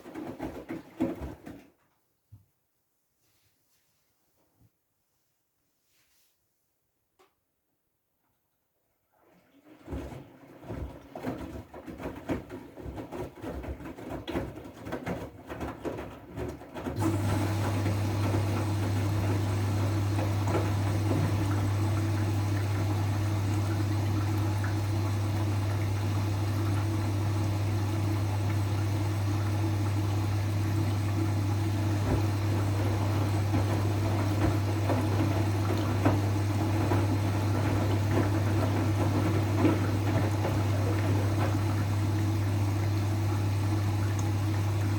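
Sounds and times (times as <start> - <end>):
washing machine hum: 0.0 - 1.8, 9.1 - 44.9
water rushing in machine: 9.3 - 44.9
washing machine drum knocking: 17.0 - 44.9.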